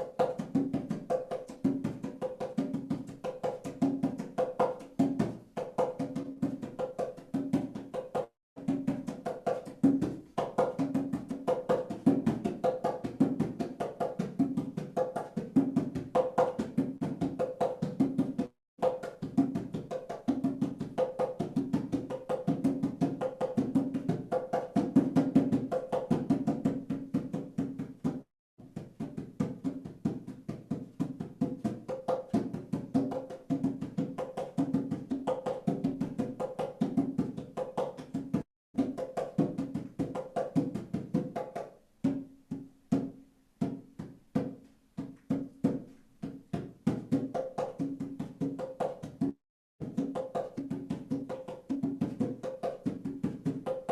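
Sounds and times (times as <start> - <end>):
drum struck in fast rhythm: 46.4 - 53.9.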